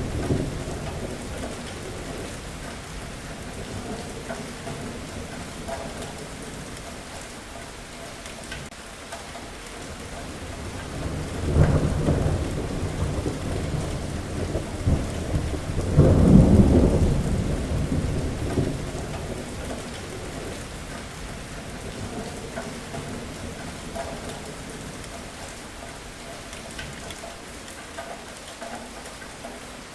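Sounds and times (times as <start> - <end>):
thunder rolling: 0.0 - 6.7, 10.3 - 25.4
steady rain: 0.0 - 29.9.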